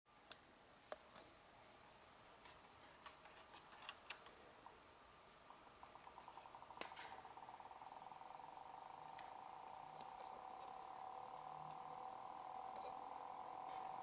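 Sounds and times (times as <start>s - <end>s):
cooling fan ticking rattle: 5.5s - 14.0s.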